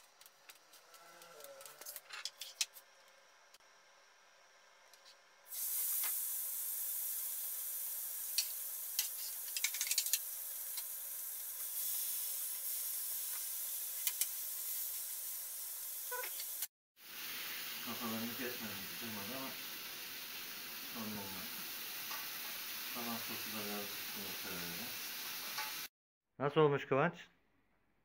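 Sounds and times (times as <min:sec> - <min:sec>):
oil popping and crackling: 0:00.0 - 0:02.8, 0:07.2 - 0:12.6, 0:13.3 - 0:14.6
fish sizzling in a pan: 0:05.5 - 0:25.9.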